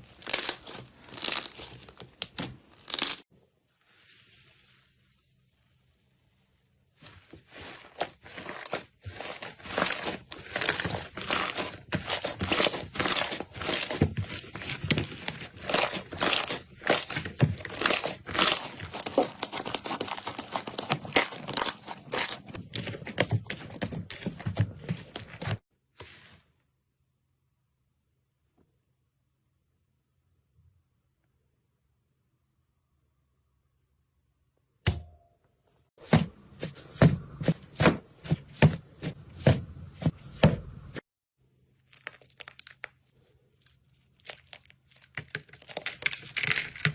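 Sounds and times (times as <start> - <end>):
slime crackling and popping: 41.8 - 43.0.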